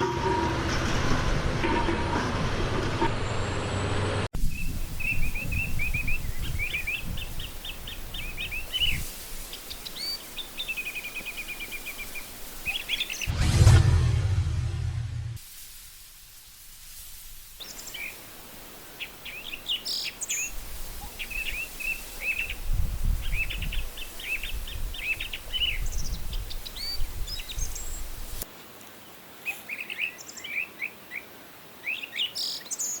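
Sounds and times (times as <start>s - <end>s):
small birds chirping: 4.5s - 13.3s
low rumble: 13.3s - 15.4s.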